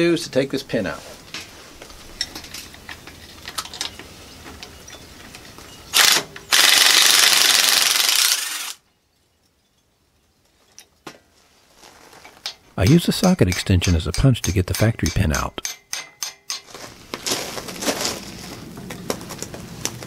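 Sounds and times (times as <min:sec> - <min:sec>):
metallic clicks and knocks: 0:12.4 - 0:16.7.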